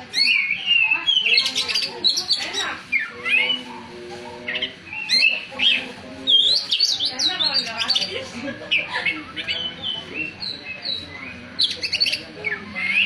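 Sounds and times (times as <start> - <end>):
bird singing whistled notes: 0.1 - 3.6.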